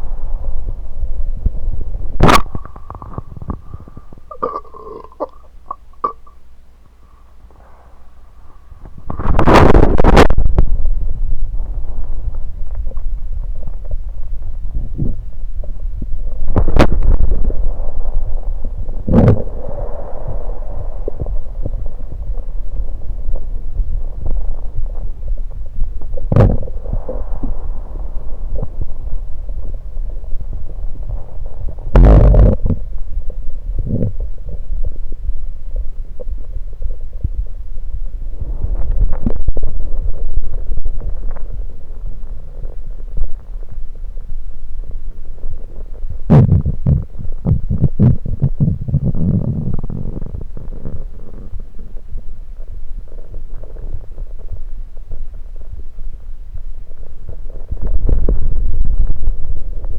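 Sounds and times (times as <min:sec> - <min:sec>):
stomach gurgling: 0:00.0 - 0:59.9
stomach pop: 0:02.2 - 0:06.4, 0:08.8 - 0:10.9, 0:14.8 - 0:17.8, 0:19.0 - 0:19.6, 0:23.3 - 0:27.6, 0:31.8 - 0:34.9, 0:38.4 - 0:44.4, 0:45.4 - 0:55.8, 0:56.5 - 0:59.9.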